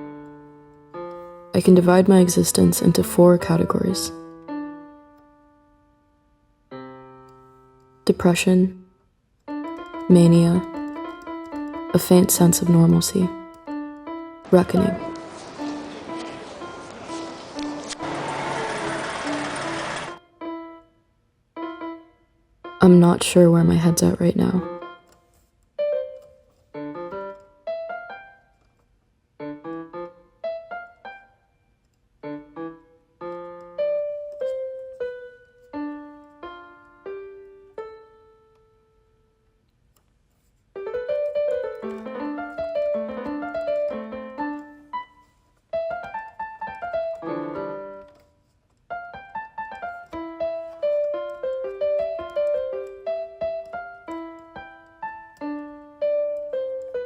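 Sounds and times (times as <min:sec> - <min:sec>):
solo piano: 0:00.0 - 0:23.2, 0:24.0 - 0:28.8, 0:29.4 - 0:31.6, 0:32.2 - 0:39.3, 0:40.7 - 0:57.0.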